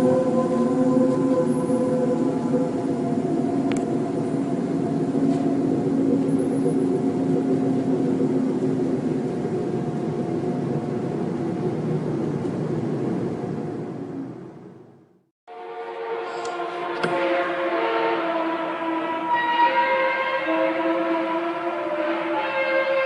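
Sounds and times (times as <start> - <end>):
droning hum with held tones: 0.0 - 15.0
low rumbling noise: 0.0 - 15.3.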